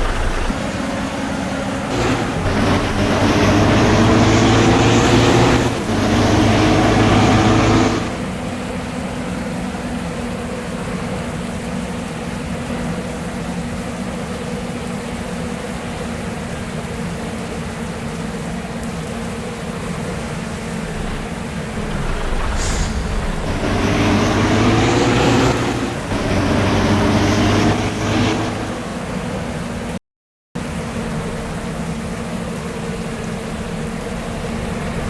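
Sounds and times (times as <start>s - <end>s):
bus engine running: 0.0s - 9.4s, 19.8s - 30.0s.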